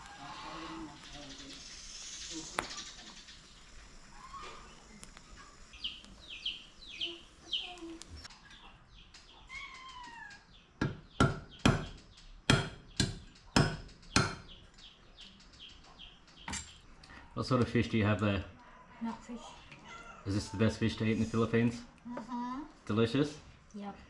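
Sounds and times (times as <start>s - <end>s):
bird chirps: 0.0s - 17.0s.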